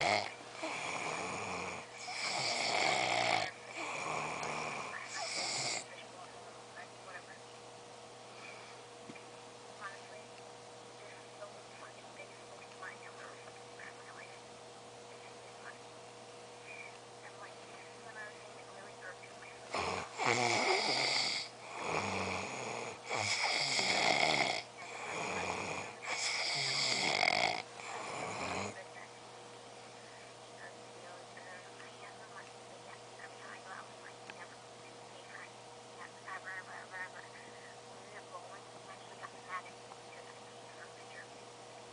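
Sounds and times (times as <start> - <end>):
person snoring: 0.0 - 5.9, 19.7 - 28.8.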